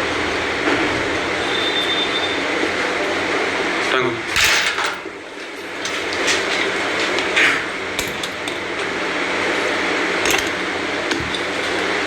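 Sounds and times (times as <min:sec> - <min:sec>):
steady background noise: 0:00.0 - 0:12.0
sharp knocks and metallic clinks: 0:10.2 - 0:11.5.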